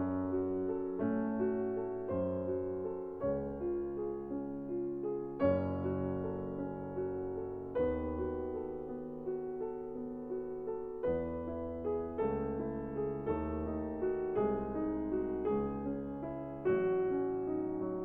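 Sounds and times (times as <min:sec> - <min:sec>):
slow piano chords: 0:00.0 - 0:18.0.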